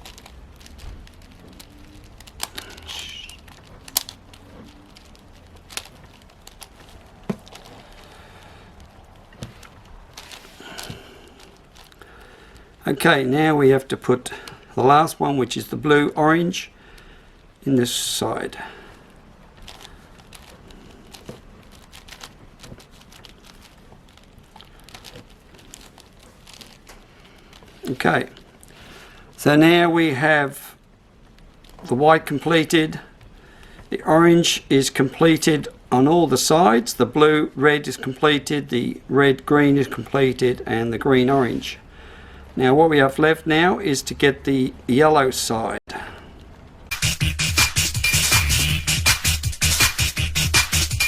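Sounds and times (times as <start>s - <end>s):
puzzle cube clicking: 0.0s - 8.0s.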